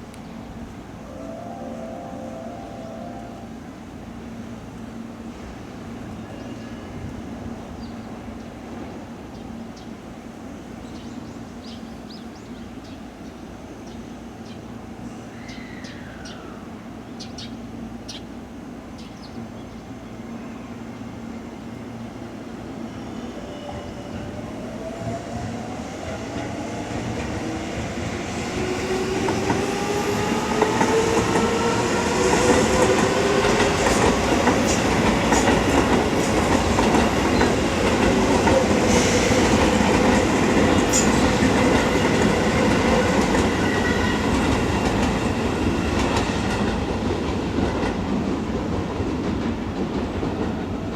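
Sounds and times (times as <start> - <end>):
train wheel clatter: 26.2 - 50.9.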